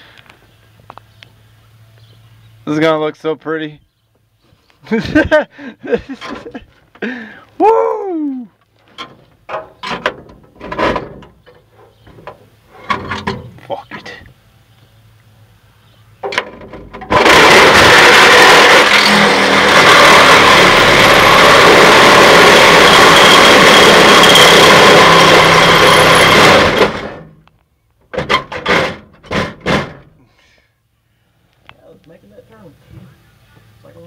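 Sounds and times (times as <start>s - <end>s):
power tool cutting sheet metal: 16.4s - 27.3s.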